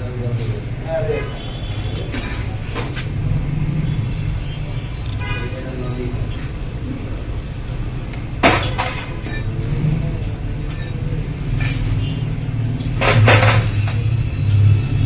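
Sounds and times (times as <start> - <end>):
metal tools clanking: 1.9 - 3.0, 7.6 - 12.2.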